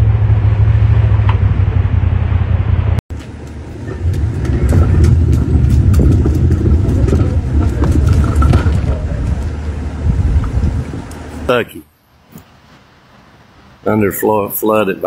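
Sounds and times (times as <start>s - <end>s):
low rumble: 0.0s - 11.5s.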